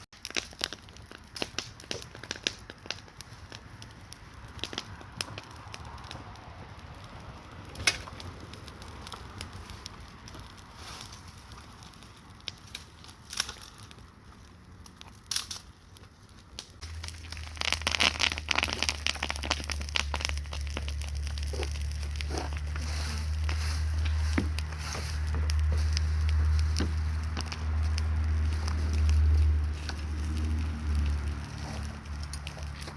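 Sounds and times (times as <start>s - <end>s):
bonfire crackling and popping: 0.0s - 32.9s
steady low rumble: 16.7s - 32.9s.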